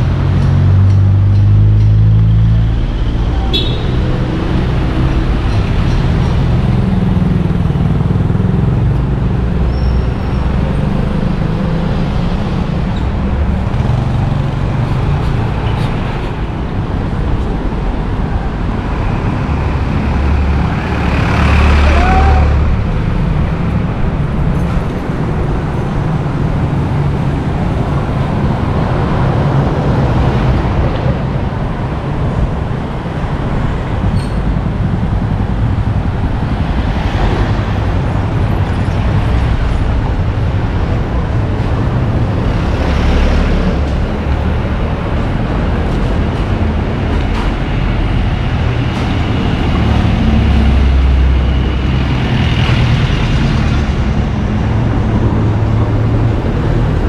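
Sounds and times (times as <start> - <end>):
road traffic passing: 0.0 - 57.0.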